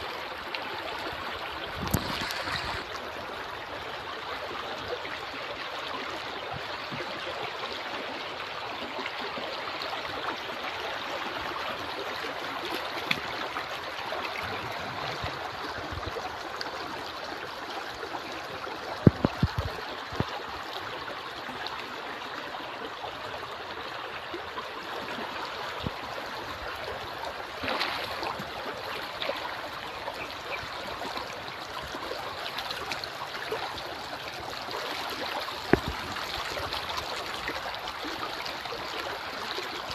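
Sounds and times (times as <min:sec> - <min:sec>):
river water rushing: 0:22.7 - 0:39.9.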